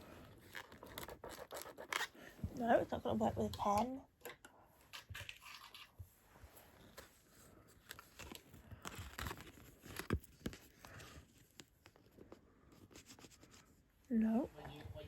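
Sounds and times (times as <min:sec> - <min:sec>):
scratching a scratch card: 0:00.4 - 0:02.2, 0:12.7 - 0:13.7.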